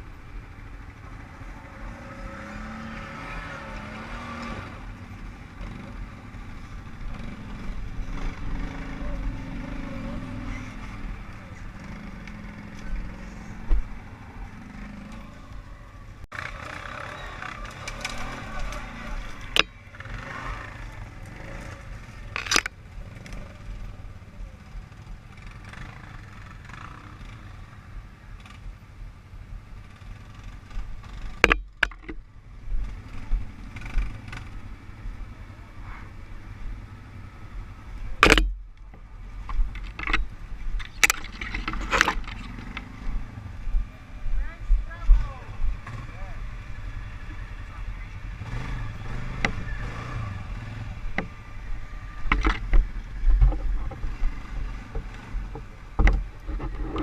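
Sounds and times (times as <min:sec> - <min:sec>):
atv engine rumble: 0:00.0 - 0:57.0
sharp knocks and thumps: 0:31.1 - 0:32.2, 0:52.2 - 0:57.0.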